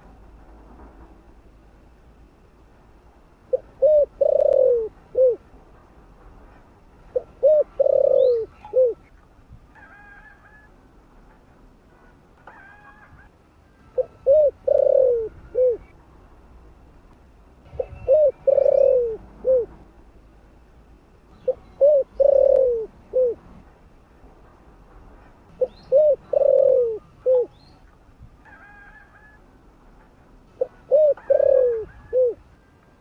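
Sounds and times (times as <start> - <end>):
dove cooing: 3.5 - 5.4, 7.1 - 9.1, 14.0 - 15.9, 17.8 - 19.8, 21.4 - 23.5, 25.6 - 27.6, 30.6 - 32.7.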